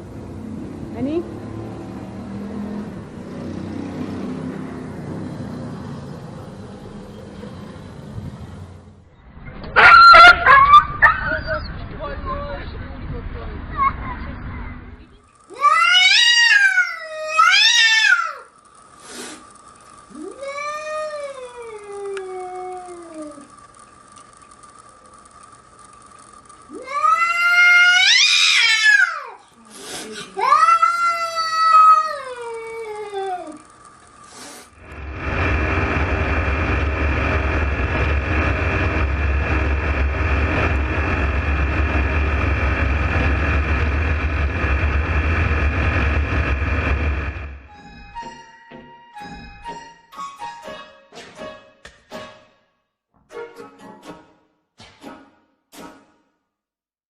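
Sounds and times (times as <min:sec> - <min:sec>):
machine running with deep rumble: 0:00.0 - 0:09.8, 0:10.5 - 0:28.8, 0:32.0 - 0:48.2
cat yowling: 0:09.8 - 0:11.5, 0:15.6 - 0:18.5, 0:20.2 - 0:23.4, 0:26.8 - 0:29.4, 0:30.4 - 0:33.6
hiss-like burst of noise: 0:18.9 - 0:19.6, 0:34.2 - 0:47.7
faint steady whine: 0:32.2 - 0:48.6.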